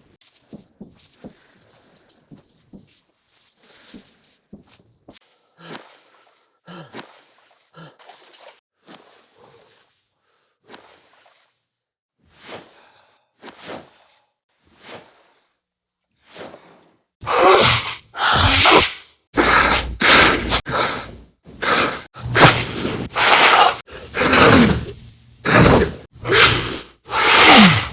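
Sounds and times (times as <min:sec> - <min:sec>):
swimming strokes splashing water: 0:05.2 - 0:11.8
pen scratching on paper: 0:17.2 - 0:27.9.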